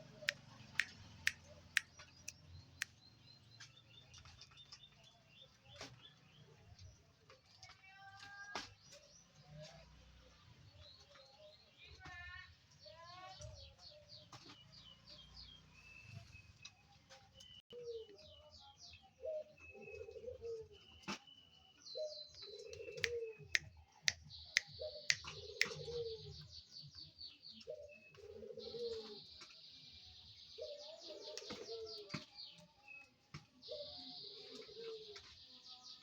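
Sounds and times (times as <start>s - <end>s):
small birds trilling chirps: 0.0s - 36.0s
dove cooing: 19.2s - 20.8s, 22.0s - 23.6s, 24.8s - 26.4s, 27.7s - 29.3s, 30.6s - 32.2s, 33.7s - 35.2s.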